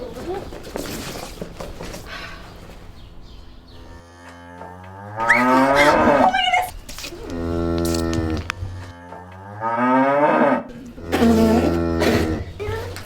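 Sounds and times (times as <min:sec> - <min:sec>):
cow mooing: 0:04.0 - 0:12.9.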